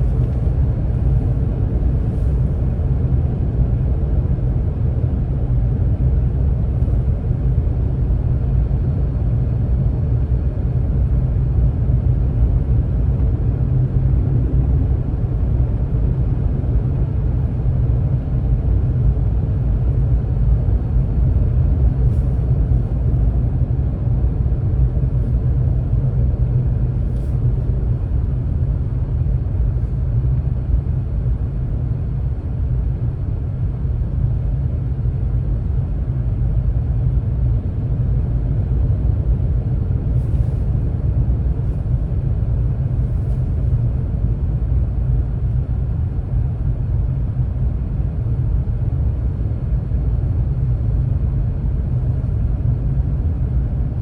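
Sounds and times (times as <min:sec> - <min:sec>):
car engine and road rumble: 0:00.0 - 0:54.0.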